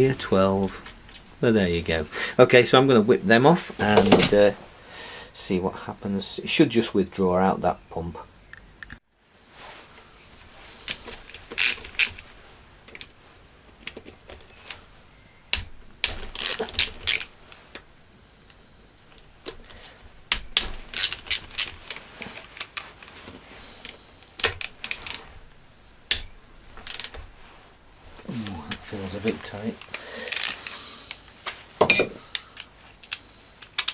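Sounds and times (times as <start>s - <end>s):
metal tools clinking: 3.8s - 4.6s, 31.8s - 32.2s.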